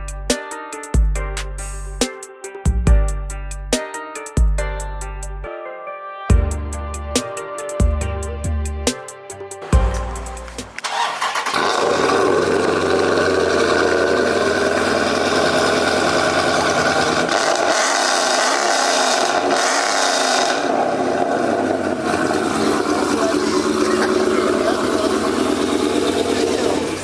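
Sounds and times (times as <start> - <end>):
car engine starting: 9.6 - 27.0
loud car engine running: 9.6 - 27.0.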